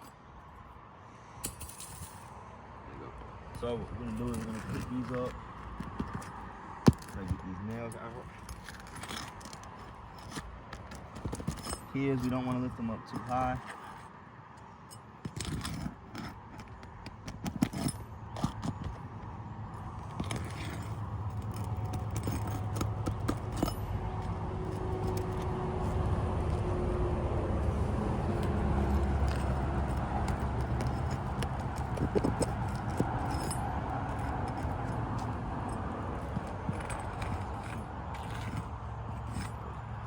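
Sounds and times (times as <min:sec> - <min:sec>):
steady low rumble: 0:20.9 - 0:39.2
roof shingles being pried up: 0:27.8 - 0:39.5.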